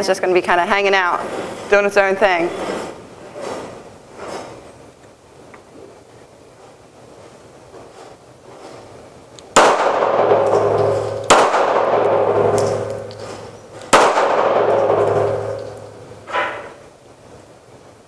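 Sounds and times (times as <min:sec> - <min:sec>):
pistol shots echoing: 0:09.6 - 0:13.3, 0:13.9 - 0:16.0.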